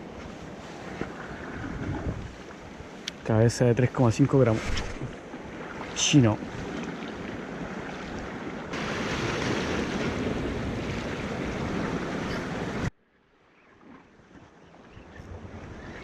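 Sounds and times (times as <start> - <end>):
wind buffeting microphone: 0.9 - 2.9, 4.1 - 12.9, 14.9 - 16.0
surf washing against rocks: 3.4 - 12.9.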